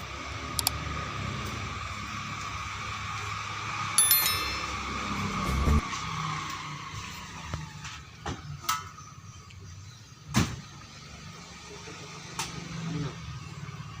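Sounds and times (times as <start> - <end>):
sharp metal knocks and clinks: 4.0 - 5.0.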